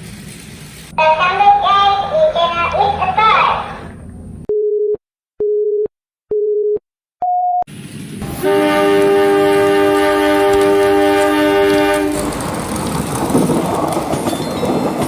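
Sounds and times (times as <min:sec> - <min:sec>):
two-tone train horn: 0:08.4 - 0:12.3.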